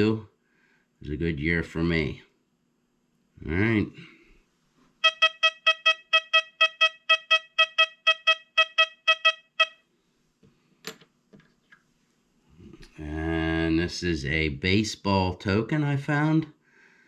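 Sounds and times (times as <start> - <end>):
metal detector beeps: 5.0 - 9.8.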